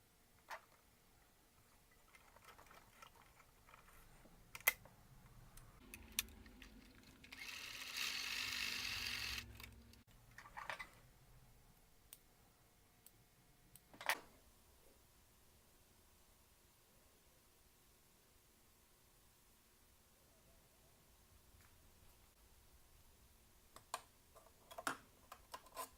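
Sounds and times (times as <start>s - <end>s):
sewing machine running: 7.3s - 9.6s.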